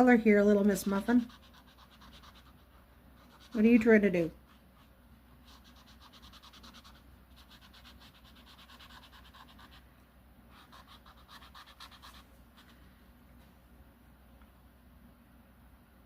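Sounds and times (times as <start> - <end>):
pencil scratching on paper: 0.4 - 9.8, 10.5 - 12.7.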